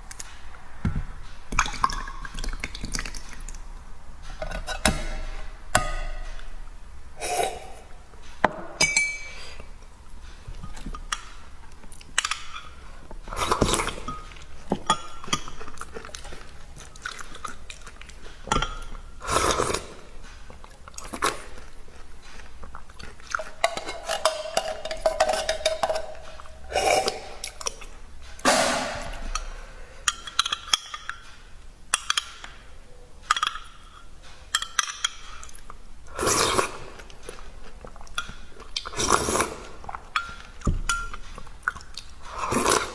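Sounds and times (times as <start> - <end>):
utensils clinking against bowl: 4.4 - 6.5, 8.7 - 9.6, 12.1 - 20.0, 23.1 - 32.6, 33.2 - 35.7, 38.0 - 41.8
person chewing: 9.3 - 28.4, 34.3 - 42.9.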